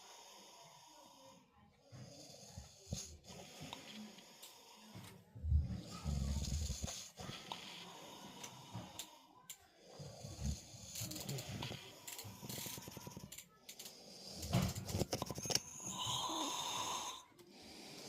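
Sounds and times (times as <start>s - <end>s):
man snoring: 15.6s - 18.0s.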